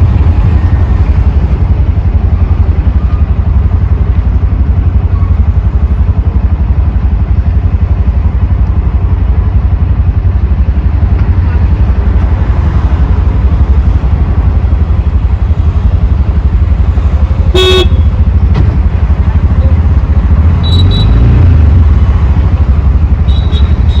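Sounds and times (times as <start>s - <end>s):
auto rickshaw engine running: 0.0s - 24.0s
vehicle horn honk: 17.5s - 18.2s, 20.6s - 21.4s, 23.2s - 24.0s.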